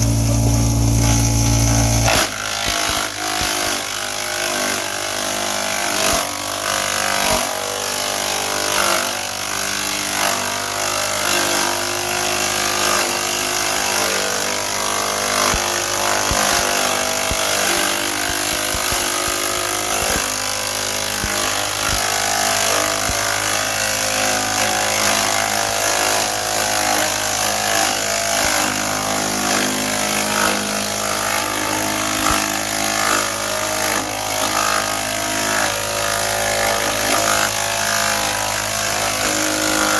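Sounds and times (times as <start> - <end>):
chipper-shredder grinding: 0.0 - 39.9
sharp cracks: 15.4 - 23.7.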